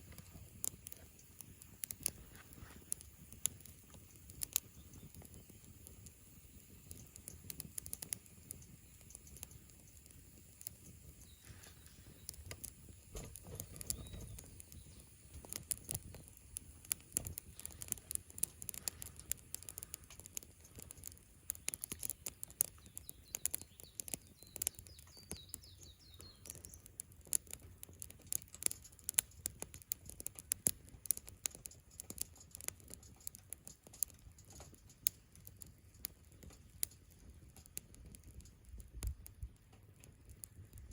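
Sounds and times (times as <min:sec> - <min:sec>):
campfire crackling and popping: 0:00.0 - 0:40.9
faint bird chirps: 0:04.1 - 0:16.2, 0:21.6 - 0:27.0.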